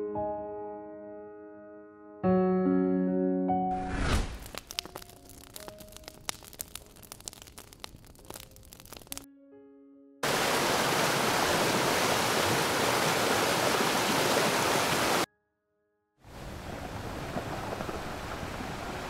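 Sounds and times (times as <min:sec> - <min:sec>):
faint crackling and popping: 0:04.1 - 0:09.3
waterfall roaring: 0:10.2 - 0:15.2, 0:16.3 - 0:19.0.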